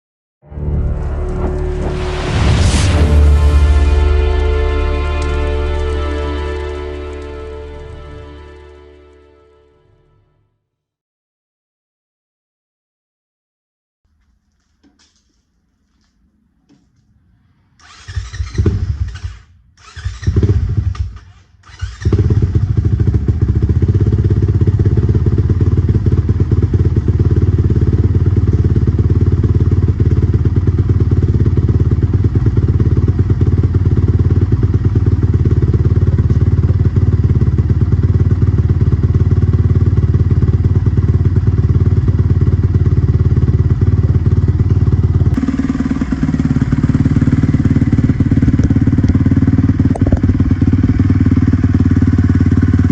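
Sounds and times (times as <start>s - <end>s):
motorcycle engine idling: 17.8s - 52.9s.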